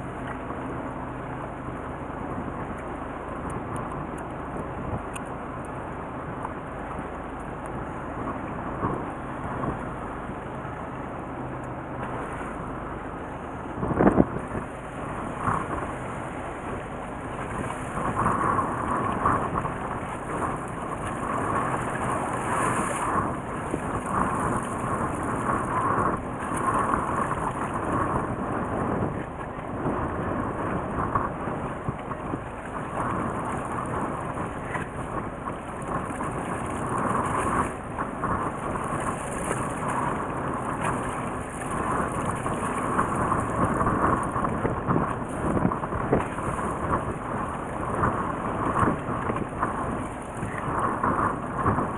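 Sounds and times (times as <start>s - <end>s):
boat engine rumbling: 0.0s - 51.9s
water: 0.0s - 51.9s
wind on microphone: 12.0s - 51.9s.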